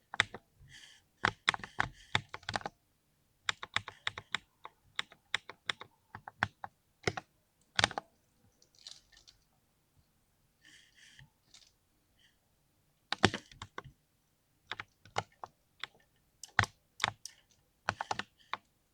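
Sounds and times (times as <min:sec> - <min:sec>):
typing on mechanical keyboard: 0:03.5 - 0:07.2, 0:07.8 - 0:08.0, 0:14.7 - 0:18.6.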